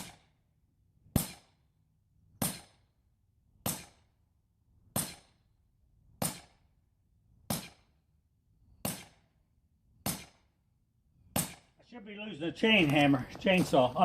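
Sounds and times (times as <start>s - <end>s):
sledgehammer striking wedge: 1.0s - 1.6s, 2.3s - 2.9s, 3.6s - 4.0s, 4.8s - 5.4s, 6.1s - 6.7s, 7.4s - 8.0s, 8.7s - 9.3s, 10.0s - 10.5s, 11.3s - 11.8s.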